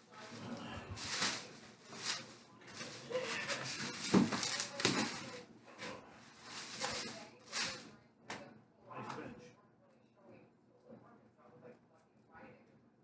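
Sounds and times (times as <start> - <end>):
packaging rustling: 0.9 - 5.4, 6.4 - 7.8.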